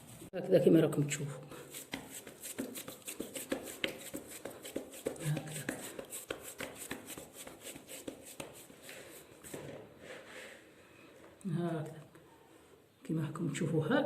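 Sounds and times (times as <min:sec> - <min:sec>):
hands slapping wet dough: 0:01.7 - 0:08.8.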